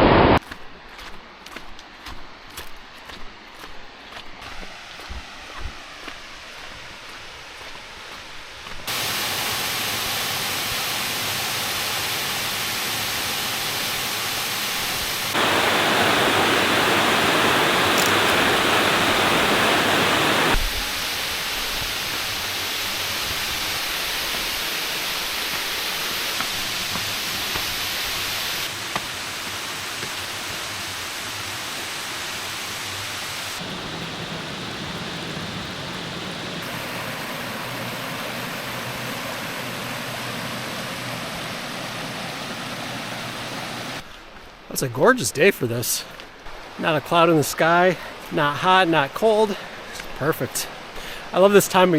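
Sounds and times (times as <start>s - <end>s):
waterfall rushing: 8.9s - 30.4s, 33.2s - 44.0s.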